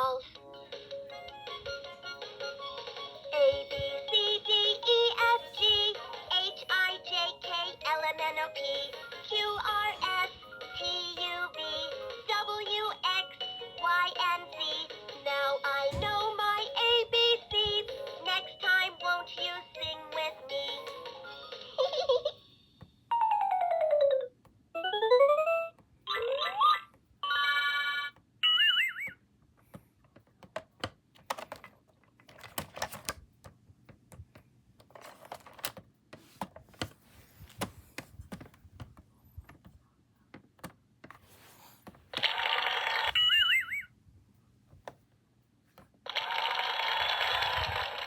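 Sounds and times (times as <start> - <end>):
clicks and taps: 29.6 - 41.2.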